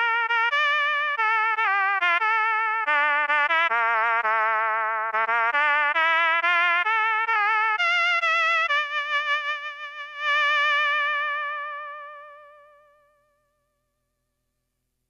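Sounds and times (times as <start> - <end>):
synthesizer notes with vibrato: 0.0 - 12.6.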